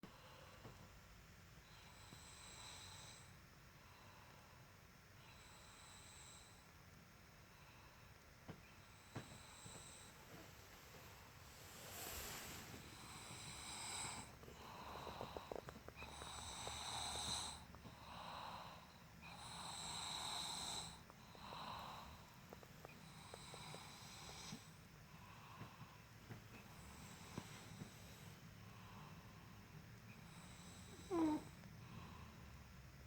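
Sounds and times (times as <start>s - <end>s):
boy snoring deeply: 11.5s - 22.3s, 30.3s - 32.5s.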